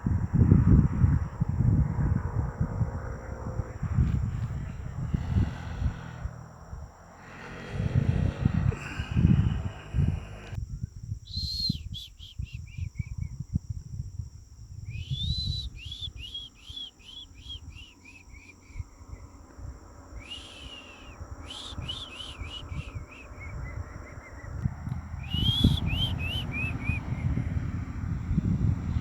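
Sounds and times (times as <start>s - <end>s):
insects buzzing: 0.0s - 29.0s
wind rumble on microphone: 0.0s - 29.0s
bird calling whistled notes: 11.3s - 13.1s, 14.9s - 18.7s, 20.2s - 24.5s, 25.2s - 27.2s.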